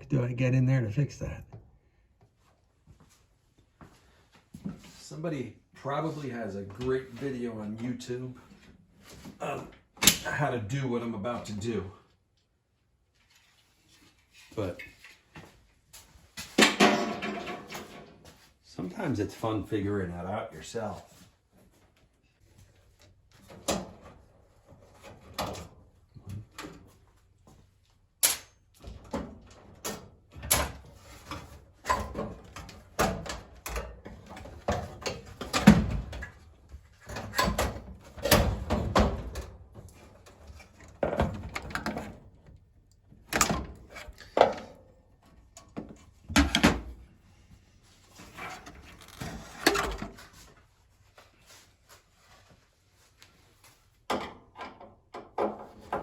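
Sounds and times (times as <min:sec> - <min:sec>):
tools knocking and scraping on metal: 0:16.5 - 0:18.2, 0:54.1 - 0:56.0.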